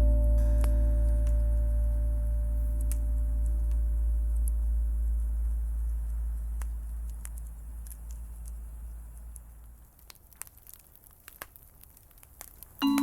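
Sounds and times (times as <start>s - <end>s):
ringing vibraphone tones: 0.0s - 2.7s
jazz trio chord: 0.0s - 6.4s
deep bass note: 0.0s - 9.9s
campfire crackling: 0.0s - 13.0s.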